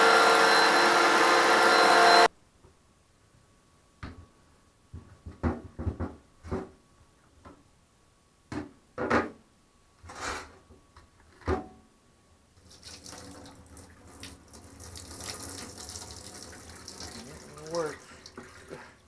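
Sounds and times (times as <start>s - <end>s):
scrape: 10.0s - 10.6s.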